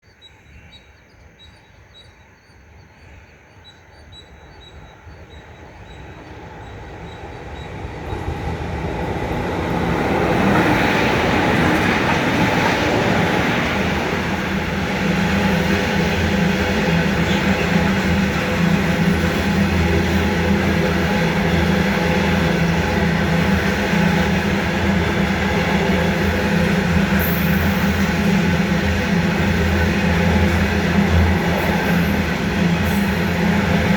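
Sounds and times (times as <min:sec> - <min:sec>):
wheel and rail noise: 0:04.6 - 0:33.9
locomotive engine rumble: 0:07.1 - 0:33.9.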